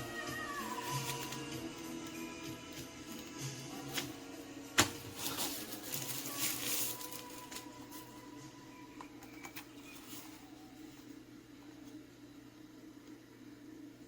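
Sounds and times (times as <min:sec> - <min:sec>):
rustling: 0:04.8 - 0:08.2.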